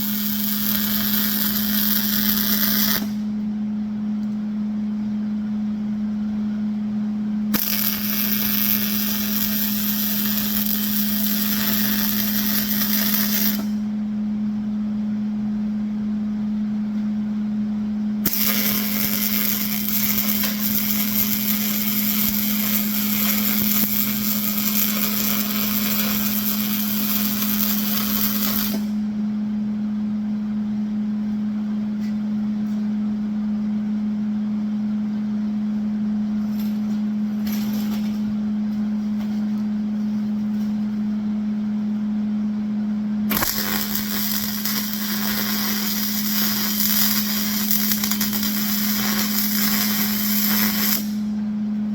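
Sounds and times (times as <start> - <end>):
welding arc crackling: 0.0 - 3.2, 7.6 - 13.8, 18.2 - 29.0, 43.3 - 51.3
steady low hum: 0.0 - 51.9.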